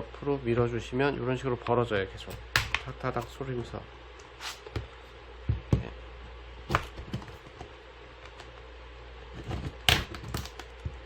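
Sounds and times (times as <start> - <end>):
plastic clips snapping: 9.9 - 10.8.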